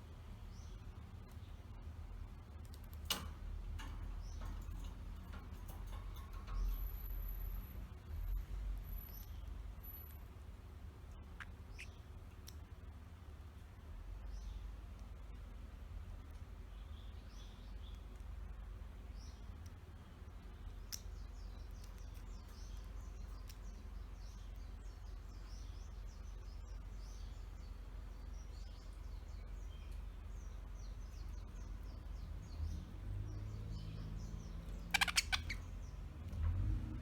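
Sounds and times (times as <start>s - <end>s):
rattle of clicks: 2.7s - 7.1s
budgerigars chirping and chattering: 11.4s - 12.0s, 28.4s - 36.1s.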